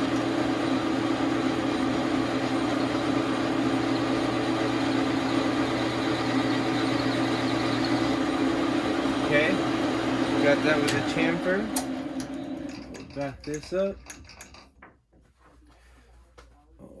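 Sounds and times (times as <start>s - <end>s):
lathe running: 0.0s - 13.4s.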